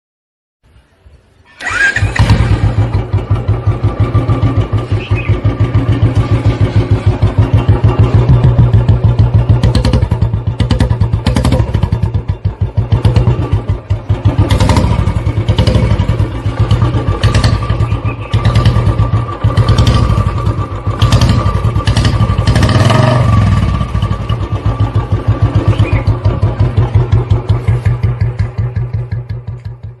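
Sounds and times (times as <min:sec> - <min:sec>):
motorcycle engine idling: 0:01.6 - 0:30.0.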